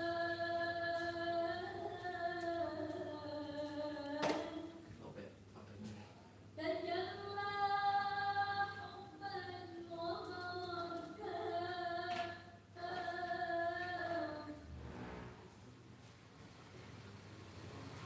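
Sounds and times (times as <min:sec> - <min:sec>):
person singing unaccompanied: 0:00.0 - 0:04.8, 0:06.6 - 0:14.6.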